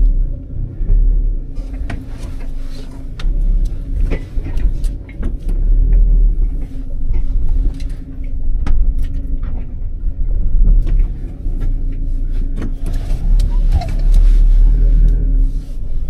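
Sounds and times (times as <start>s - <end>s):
low rumbling: 0.0s - 16.0s
sharp clicks and light knocks: 1.6s - 10.0s.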